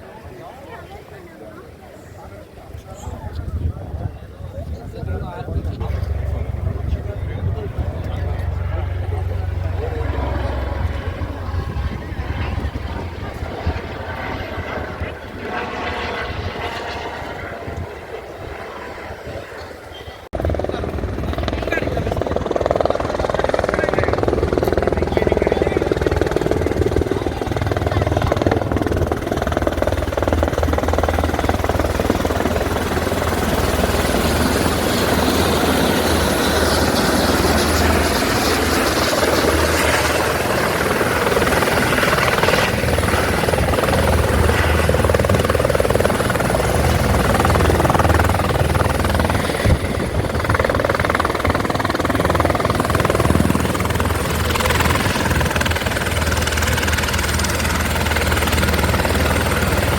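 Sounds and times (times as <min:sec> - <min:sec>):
helicopter rotor and engine: 0:00.0 - 0:59.9.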